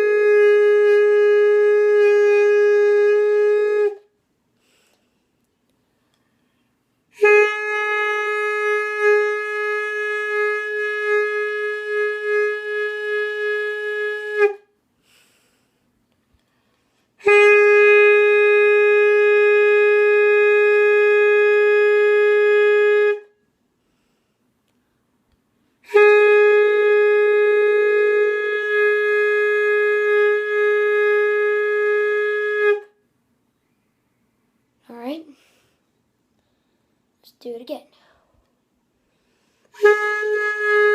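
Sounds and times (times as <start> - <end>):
wind instrument long held notes: 0.0 - 4.1, 7.1 - 14.7, 17.2 - 23.4, 25.8 - 33.0, 39.6 - 40.9.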